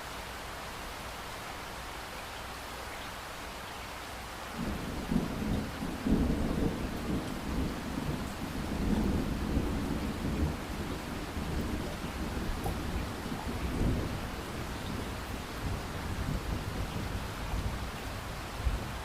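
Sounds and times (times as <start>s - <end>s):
light rain with drips: 0.0s - 19.0s
distant thunder rumble: 4.6s - 19.0s.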